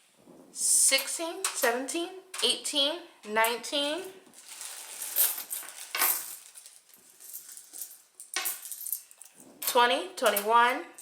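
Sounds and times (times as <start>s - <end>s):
coins clinking: 4.4s - 11.0s.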